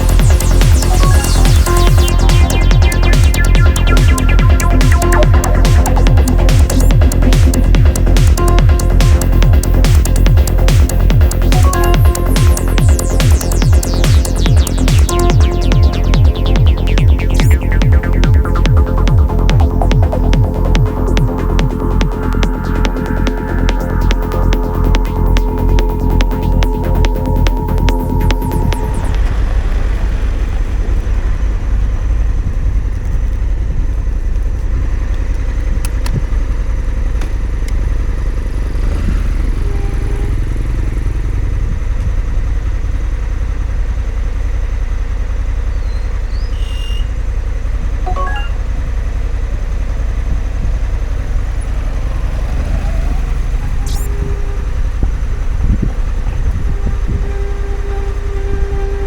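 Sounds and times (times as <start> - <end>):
motorcycle engine running: 0.0 - 59.0
wind rumble on microphone: 16.3 - 36.8, 50.2 - 59.0.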